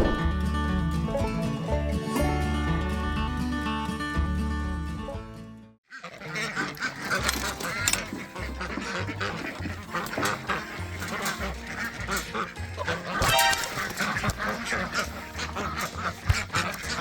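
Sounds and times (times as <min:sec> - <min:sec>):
plucked-string music: 0:00.0 - 0:05.0, 0:06.7 - 0:17.0
farmyard fowl calling: 0:05.9 - 0:17.0.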